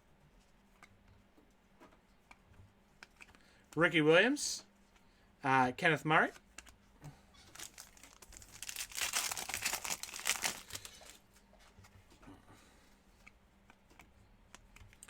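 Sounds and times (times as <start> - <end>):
card pack wrapper tearing and crinkling: 7.5 - 11.2.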